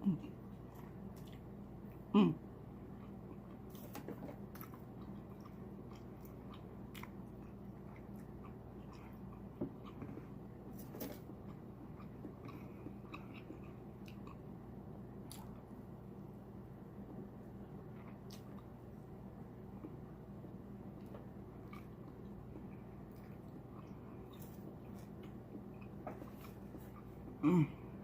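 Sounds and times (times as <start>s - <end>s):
person chewing and smacking: 0.2s - 1.6s, 2.9s - 14.5s, 15.2s - 15.7s, 17.8s - 18.8s, 21.0s - 27.3s.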